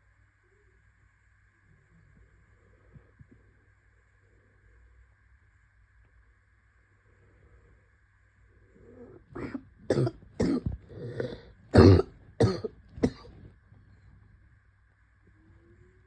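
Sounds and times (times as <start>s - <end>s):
person coughing: 9.4s - 13.4s.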